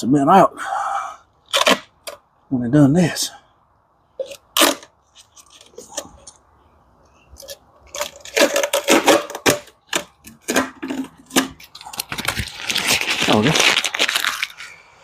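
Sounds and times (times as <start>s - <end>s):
masking tape ripping and crinkling: 11.3s - 14.8s.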